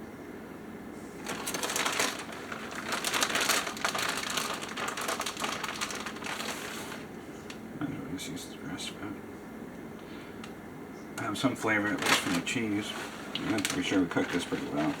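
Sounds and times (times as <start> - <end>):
shredded cheese pouring: 1.2 - 7.0
plastic bag crinkling: 1.2 - 7.1, 11.6 - 15.0.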